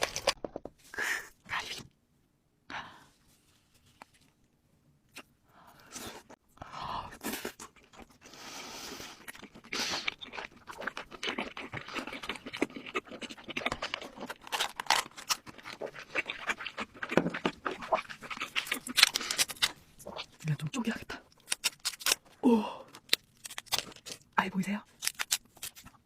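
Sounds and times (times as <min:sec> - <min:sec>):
chewing and crunching: 0:00.0 - 0:00.4, 0:07.2 - 0:26.0.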